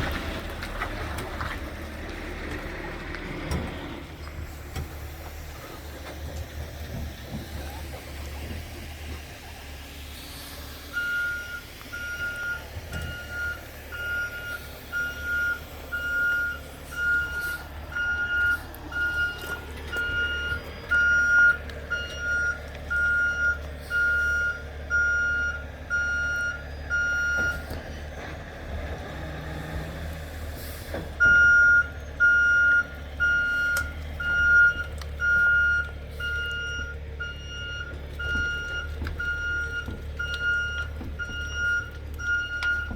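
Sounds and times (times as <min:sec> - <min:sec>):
truck engine running: 0:00.0 - 0:42.9
truck backup alarm beeping: 0:10.6 - 0:42.9.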